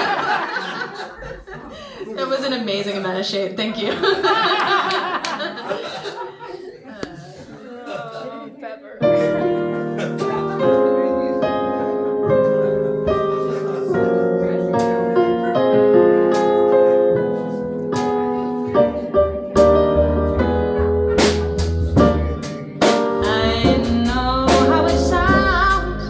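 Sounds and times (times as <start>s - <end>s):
piano chords: 9.0s - 26.0s
low bass line: 19.6s - 22.6s, 23.2s - 26.0s.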